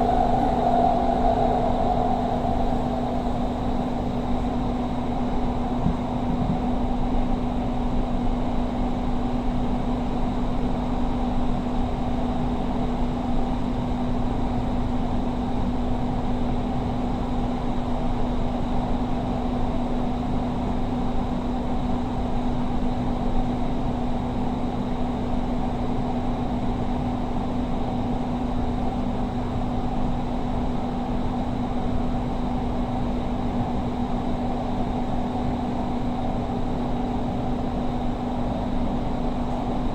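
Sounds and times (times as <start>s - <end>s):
train rumbling inside carriage: 0.0s - 4.8s.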